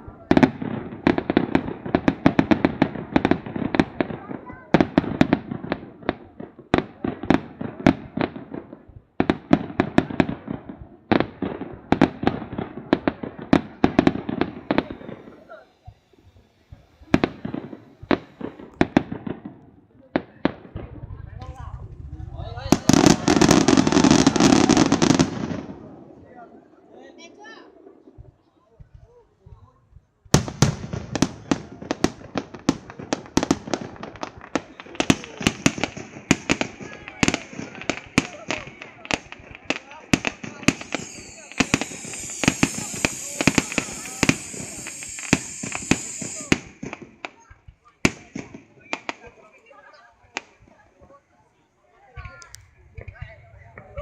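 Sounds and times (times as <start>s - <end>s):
fireworks bangs: 0.0s - 51.3s
fireworks crackling: 0.0s - 54.0s.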